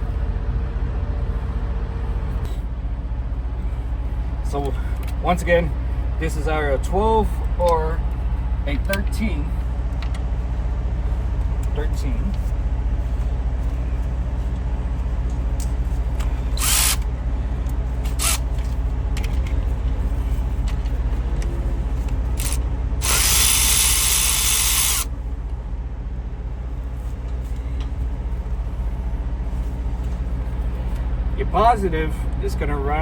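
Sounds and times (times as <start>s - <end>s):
low engine drone: 0.0s - 33.0s
handheld power tool running: 16.1s - 17.1s, 18.0s - 18.5s, 22.3s - 25.1s.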